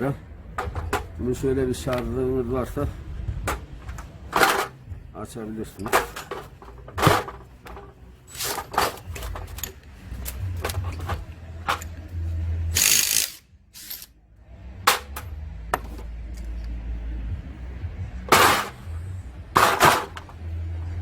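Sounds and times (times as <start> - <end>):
tools clicking on metal: 12.8 - 14.1.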